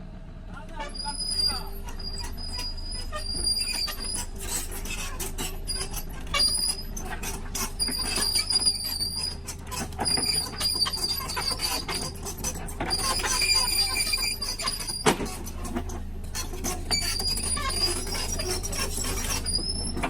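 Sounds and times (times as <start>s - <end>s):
excavator engine rumble: 0.0s - 20.0s
high metallic squeal: 0.8s - 20.0s.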